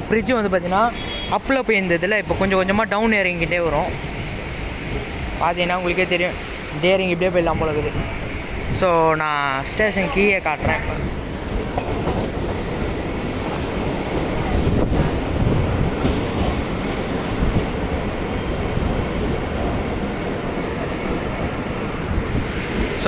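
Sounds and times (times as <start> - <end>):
train rumbling on rails: 0.0 - 23.0
high wheel squeal: 13.6 - 23.0.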